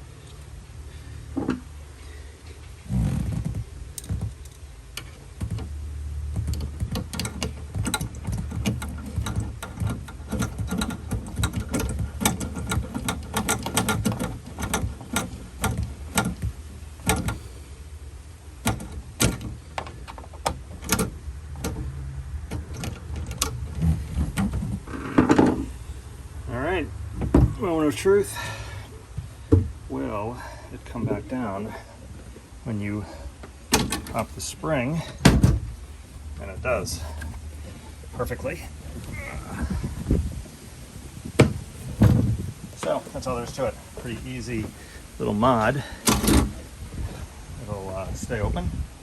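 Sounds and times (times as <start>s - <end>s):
tools clicking and knocking: 6.3s - 17.4s, 18.6s - 21.9s, 33.7s - 34.2s.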